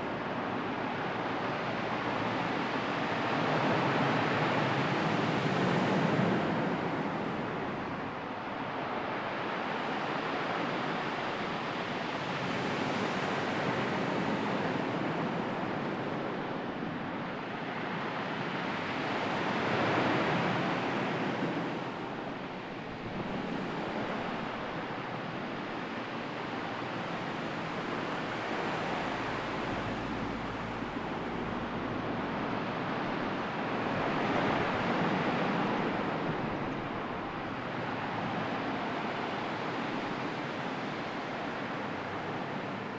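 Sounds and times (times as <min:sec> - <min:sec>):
sea waves washing: 0:18.6 - 0:42.9.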